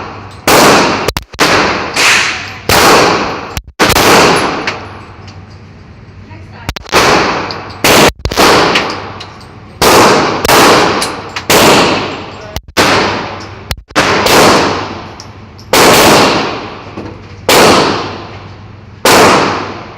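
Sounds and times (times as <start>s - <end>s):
pistol shots with echo: 0.0s - 4.8s, 6.8s - 9.2s, 9.8s - 15.1s, 15.7s - 16.8s, 17.5s - 18.3s, 19.0s - 19.9s.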